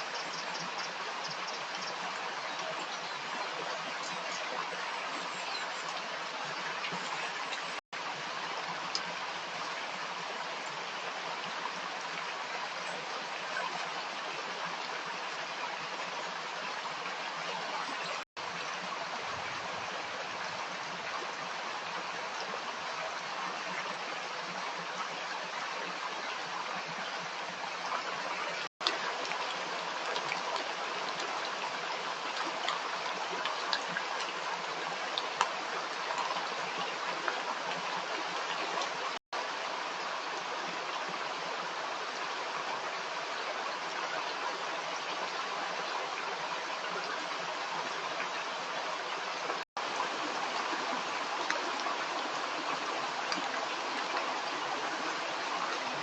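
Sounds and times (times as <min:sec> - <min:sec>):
stream water rushing: 0:00.0 - 0:56.0
small water splashes: 0:27.6 - 0:39.5.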